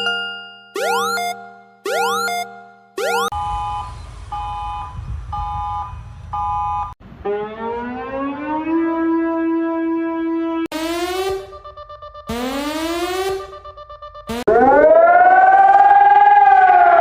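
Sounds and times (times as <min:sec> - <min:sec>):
electronic alert tones beeping: 0:00.8 - 0:04.8, 0:11.0 - 0:14.5
siren winding up: 0:00.8 - 0:04.8, 0:07.2 - 0:17.0.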